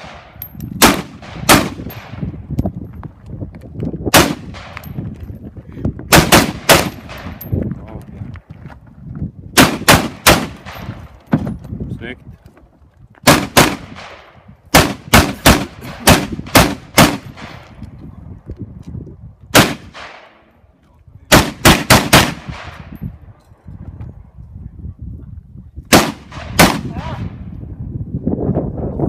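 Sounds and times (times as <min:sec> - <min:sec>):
rifle shots with echo: 0:00.0 - 0:02.3, 0:04.1 - 0:05.0, 0:06.1 - 0:07.4, 0:09.6 - 0:11.0, 0:13.2 - 0:17.8, 0:19.5 - 0:20.4, 0:21.3 - 0:23.0, 0:25.9 - 0:27.4.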